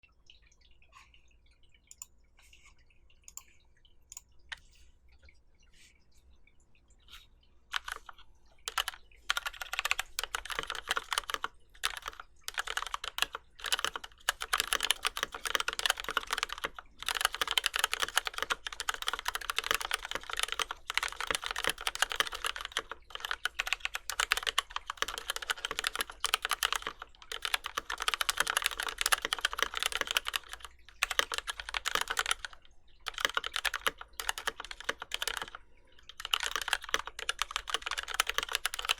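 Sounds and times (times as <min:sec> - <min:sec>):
typing on mechanical keyboard: 0:07.7 - 0:38.9.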